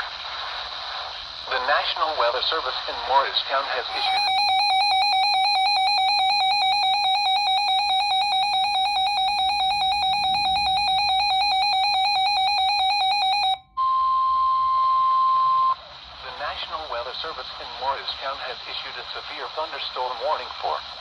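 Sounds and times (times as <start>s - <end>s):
warbling buzzy alarm tone: 3.9s - 13.9s
steady warning tone: 3.9s - 15.7s.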